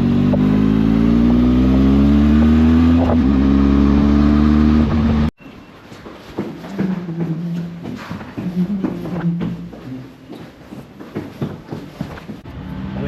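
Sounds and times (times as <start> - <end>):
motorcycle engine revving: 0.0 - 5.3.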